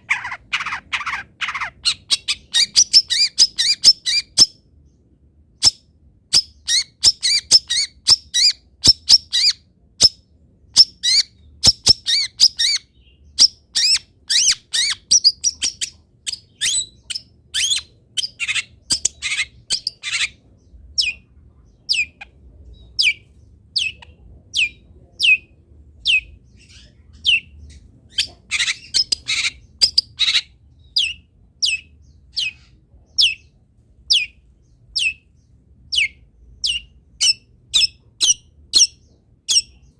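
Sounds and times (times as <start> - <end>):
shrike chattering: 0.0 - 4.2.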